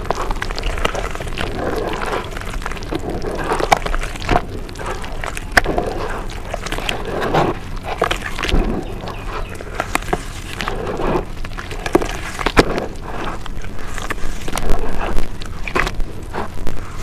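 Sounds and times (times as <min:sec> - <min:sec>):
dirt being chewed: 0:00.0 - 0:17.0.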